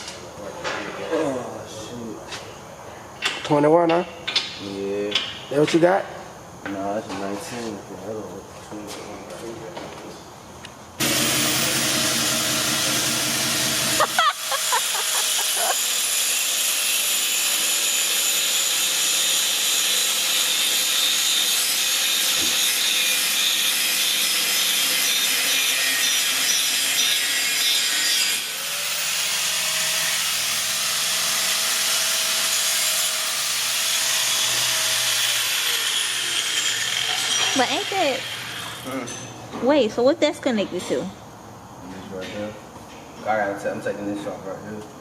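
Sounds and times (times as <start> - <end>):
metal-cutting tool hissing: 11.0 - 38.9.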